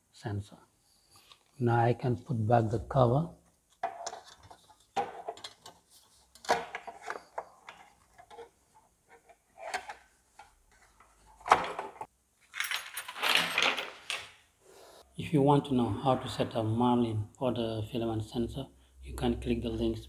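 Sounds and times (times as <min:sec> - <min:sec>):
clicks and knocks of cover handling: 0:03.7 - 0:08.5.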